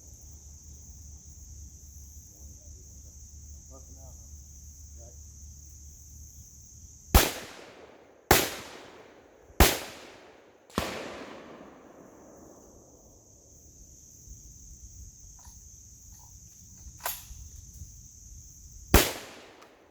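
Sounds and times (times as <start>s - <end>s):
soft crack: 7.2s - 12.1s
loud gunshots: 7.2s - 12.9s, 19.0s - 19.9s.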